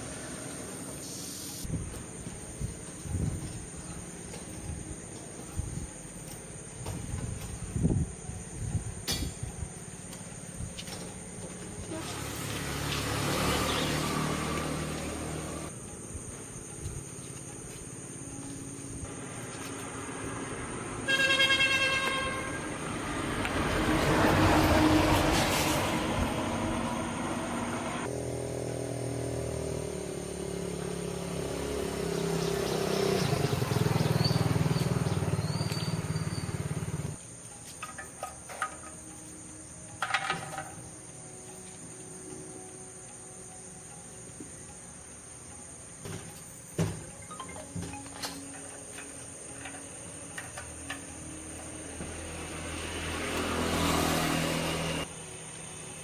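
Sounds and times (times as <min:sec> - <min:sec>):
vehicle engines running: 0:09.5 - 0:39.2, 0:47.0 - 0:56.0
vehicle horn blast: 0:21.0 - 0:22.8.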